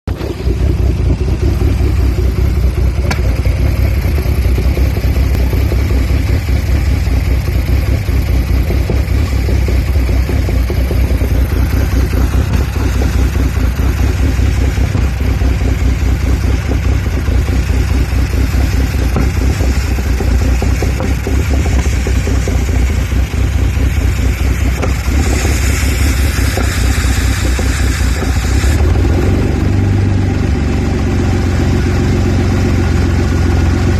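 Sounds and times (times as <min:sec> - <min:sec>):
car engine idling roughly: 0:00.0 - 0:33.9
hiss: 0:17.7 - 0:29.2.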